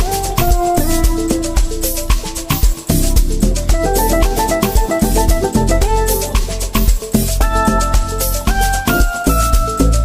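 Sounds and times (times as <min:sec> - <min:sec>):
dance music with deep bass: 0:00.0 - 0:10.0.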